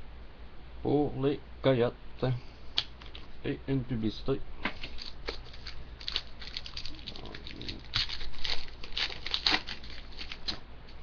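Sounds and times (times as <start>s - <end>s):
trading cards clicking and rustling: 4.6s - 10.6s.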